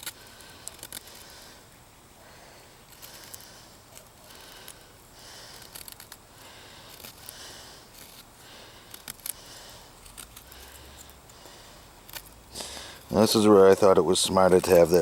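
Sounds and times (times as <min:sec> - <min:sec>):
small clicks: 0:00.0 - 0:01.3
knife blade scraping wood: 0:05.4 - 0:11.3, 0:12.0 - 0:15.0.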